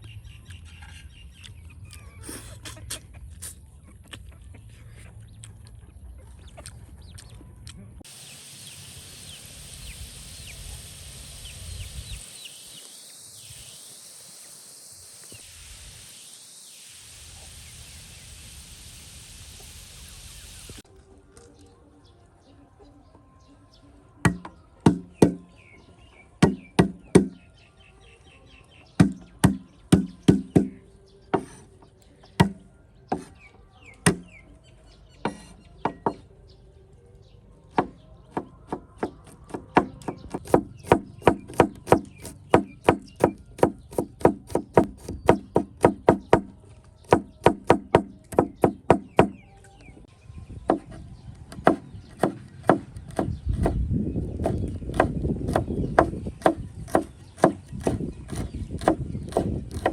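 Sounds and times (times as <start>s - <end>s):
knife chopping on wooden board: 24.3s - 25.4s, 26.4s - 27.4s, 29.0s - 30.8s, 37.8s - 46.5s, 54.4s - 59.9s.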